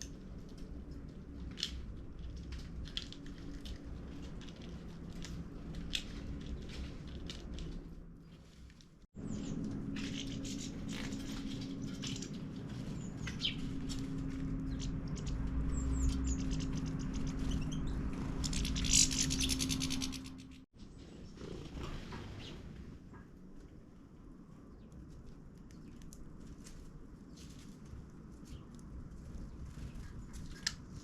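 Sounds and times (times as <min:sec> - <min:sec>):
fast rattling bird trill: 0:09.2 - 0:20.6
small birds chirping: 0:09.2 - 0:22.7, 0:28.3 - 0:31.0.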